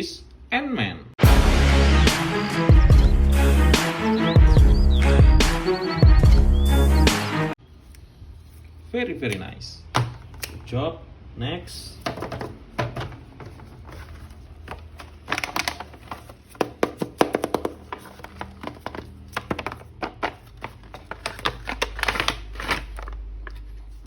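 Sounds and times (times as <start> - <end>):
plastic packaging clicks and crinkles: 13.2 - 24.0.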